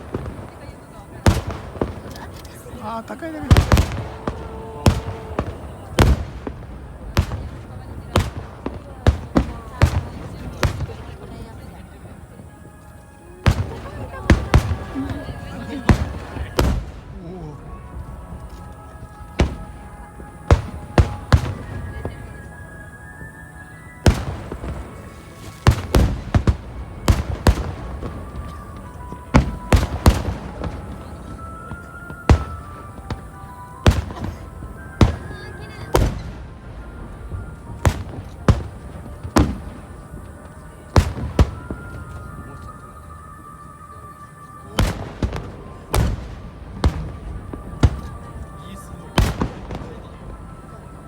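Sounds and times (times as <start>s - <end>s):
firework shells bursting: 0.0s - 12.1s, 22.8s - 42.8s, 44.8s - 48.5s
faint music: 0.0s - 51.0s.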